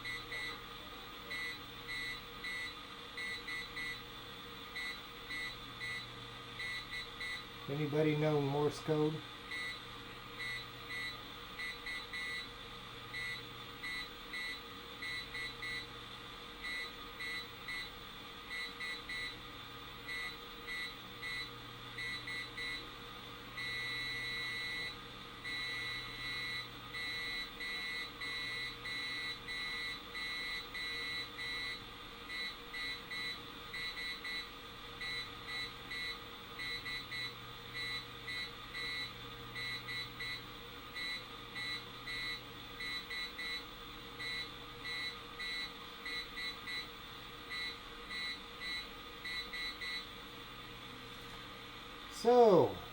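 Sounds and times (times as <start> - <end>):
morse code beeps: 10.4 - 12.4, 35.0 - 40.4, 41.0 - 43.6, 44.2 - 46.9, 47.5 - 50.0.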